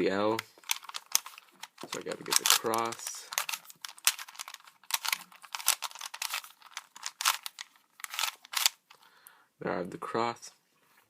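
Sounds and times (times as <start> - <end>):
puzzle cube clicking as twisted: 0.3 - 9.0.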